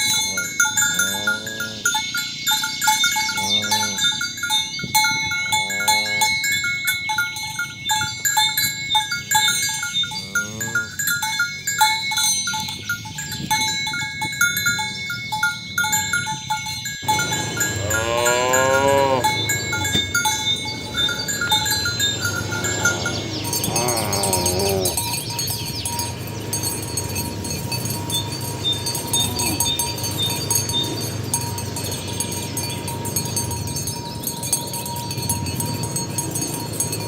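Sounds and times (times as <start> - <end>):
cattle mooing: 0.0 - 2.4, 3.1 - 4.4, 5.3 - 6.6, 9.3 - 11.2, 17.0 - 25.7, 27.6 - 31.3
cowbells clanking: 0.0 - 37.0.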